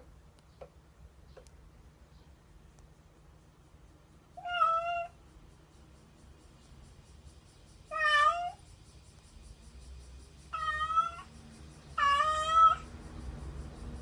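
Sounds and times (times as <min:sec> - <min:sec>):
cat meowing: 0:04.4 - 0:05.2, 0:07.9 - 0:08.6, 0:10.6 - 0:11.3, 0:12.0 - 0:12.8.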